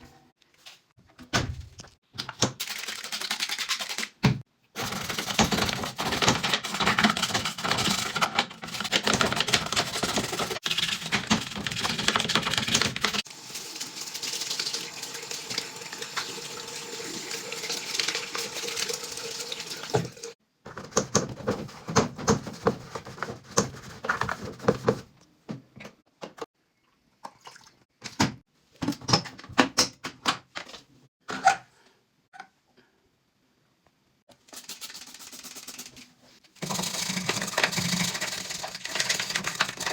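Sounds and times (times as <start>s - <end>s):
water running: 13.0s - 20.4s
scrubbing and rubbing: 36.6s - 39.9s.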